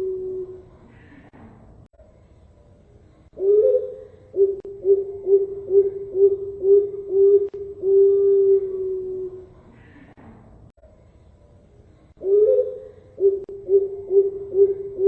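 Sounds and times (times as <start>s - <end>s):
dove cooing: 0.0s - 1.2s, 3.4s - 9.5s, 12.2s - 15.0s.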